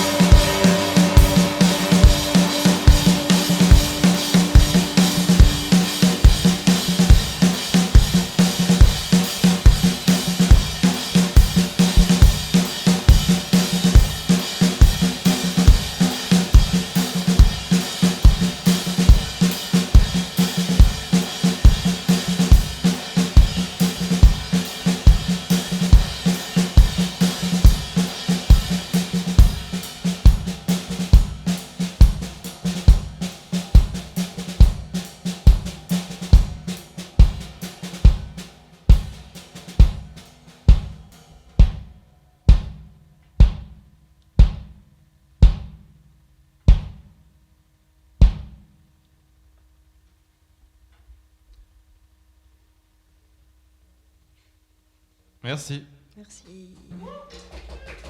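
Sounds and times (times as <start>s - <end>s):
rock band playing: 0.0s - 8.8s
drum kit playing: 0.0s - 41.9s.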